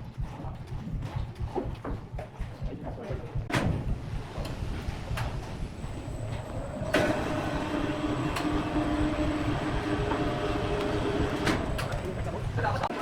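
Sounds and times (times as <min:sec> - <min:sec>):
steady machine whine: 0:03.6 - 0:13.0
sawmill machinery rumble: 0:04.0 - 0:13.0.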